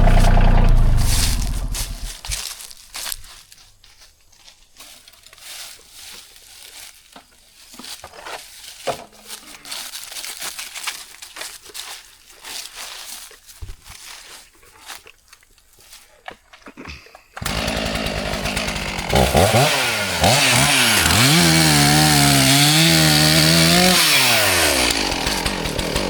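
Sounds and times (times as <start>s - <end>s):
sharp crackles: 0.0s - 2.5s
dry leaves crunching and rustling: 0.0s - 15.0s.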